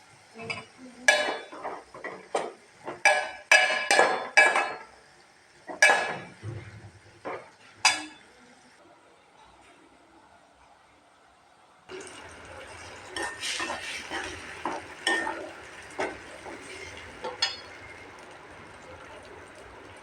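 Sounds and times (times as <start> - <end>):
metal utensils and dishes clinking: 12.0 - 18.1.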